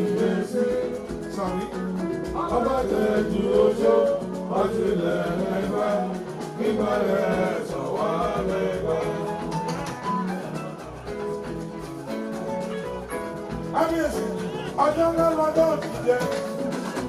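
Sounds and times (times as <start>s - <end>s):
person singing: 0.0s - 10.6s
guitars: 0.0s - 17.0s
percussion: 0.0s - 17.0s.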